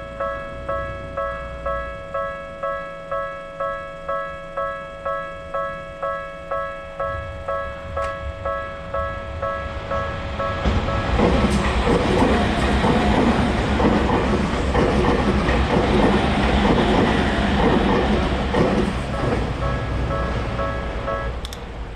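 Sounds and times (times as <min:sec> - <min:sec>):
level-crossing warning bell: 0:00.0 - 0:21.9
train wheels clattering over rails: 0:08.9 - 0:21.9.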